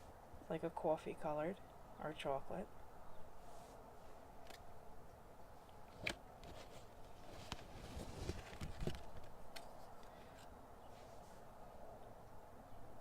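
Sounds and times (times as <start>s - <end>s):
soft rustles: 3.4s - 4.2s, 5.9s - 11.5s.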